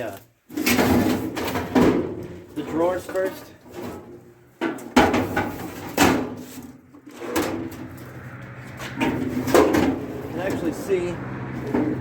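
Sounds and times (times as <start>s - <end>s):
metal drawers sliding on rails: 0.5s - 7.9s.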